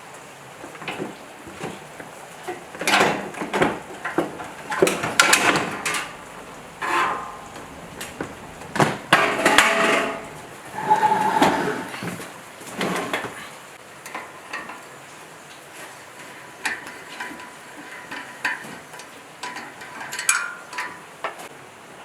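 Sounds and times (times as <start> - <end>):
hard objects clattering and knocking: 2.5 - 13.4.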